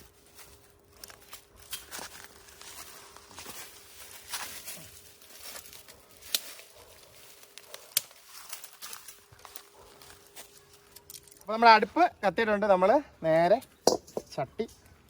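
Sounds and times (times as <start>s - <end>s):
rustling and crinkling: 0.0s - 11.7s.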